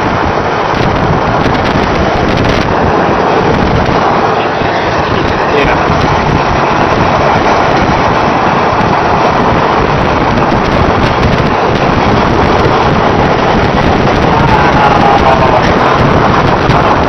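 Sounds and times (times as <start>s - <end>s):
strong wind on microphone: 0.0s - 17.0s.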